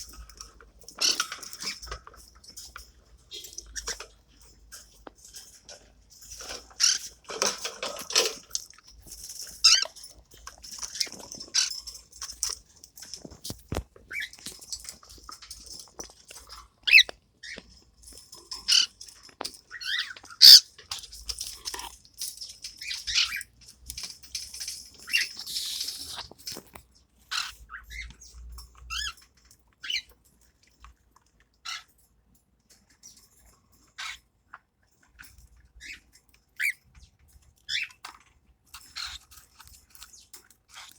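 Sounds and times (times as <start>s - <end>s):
baby parrots squeaking and chirping: 0.9s - 2.0s, 6.4s - 8.6s, 9.3s - 12.6s, 13.2s - 15.0s, 15.6s - 23.7s, 24.6s - 30.2s, 31.6s - 32.0s, 33.8s - 34.3s, 35.1s - 40.9s.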